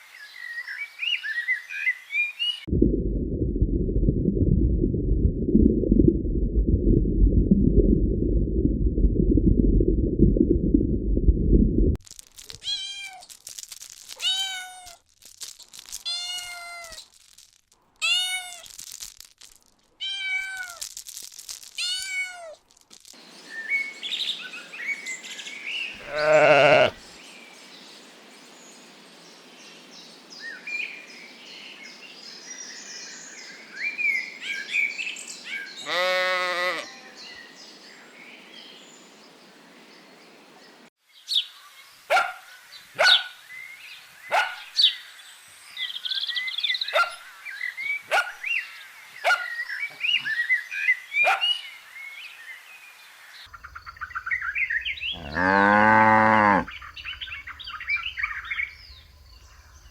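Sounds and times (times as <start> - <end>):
faint hiss: 12.1 - 35.6
cat meowing: 12.6 - 13.2, 14.2 - 15.0, 16.1 - 17.0, 18.0 - 18.6, 20.0 - 20.8, 21.8 - 22.6, 26.0 - 26.9
birds chirping: 23.2 - 28.0, 42.1 - 45.1, 45.8 - 51.9, 53.2 - 59.9
drawn-out animal calls: 26.0 - 27.0.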